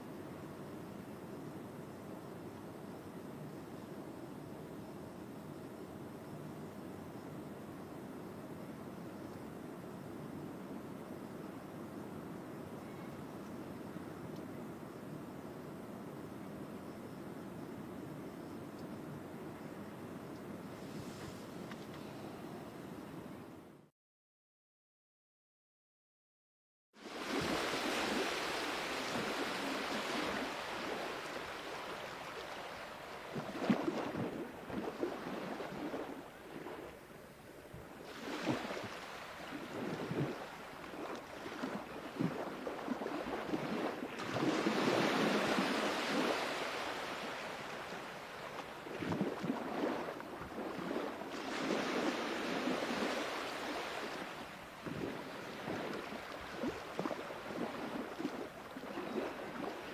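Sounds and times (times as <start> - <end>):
sea waves breaking on shore: 27.0 - 59.9.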